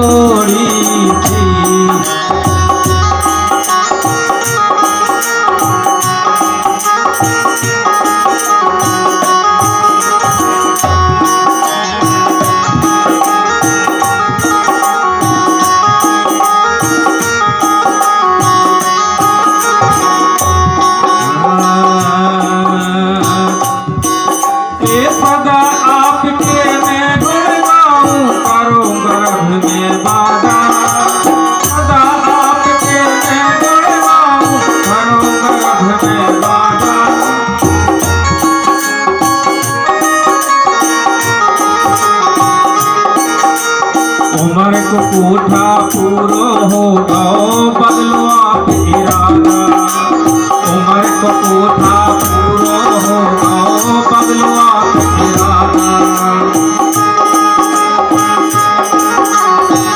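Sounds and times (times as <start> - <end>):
melody instrument playing: 0.0 - 47.5
hand drum rhythm: 0.0 - 59.9.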